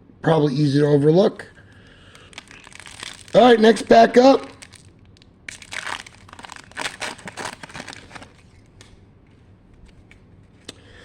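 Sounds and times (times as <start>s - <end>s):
card pack wrapper tearing and crinkling: 2.1s - 8.6s.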